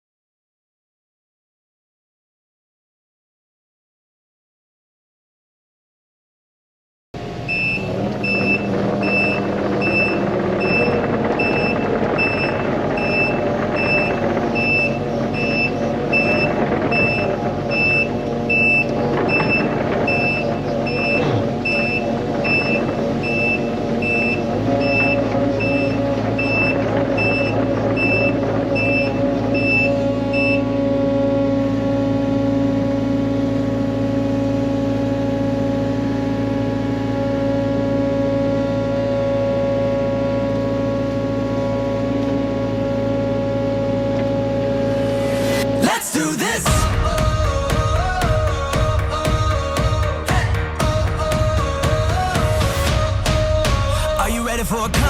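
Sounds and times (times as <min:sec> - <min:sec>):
mini excavator engine running: 0:07.2 - 0:55.0
travel alarm beeping: 0:07.4 - 0:30.9.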